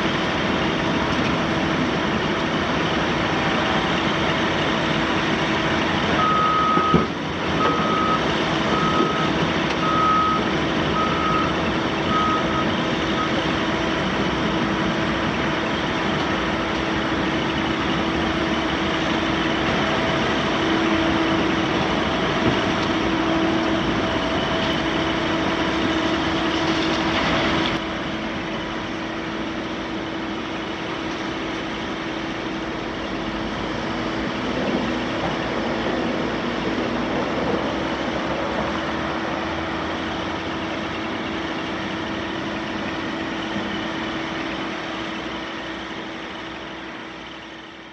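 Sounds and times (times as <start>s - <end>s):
diesel engine running: 0.0s - 47.9s
steady whine: 0.0s - 47.9s.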